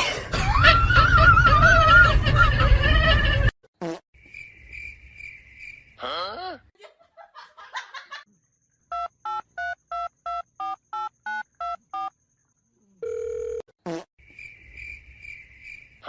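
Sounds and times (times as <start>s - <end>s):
steady dial tone: 13.0s - 13.7s.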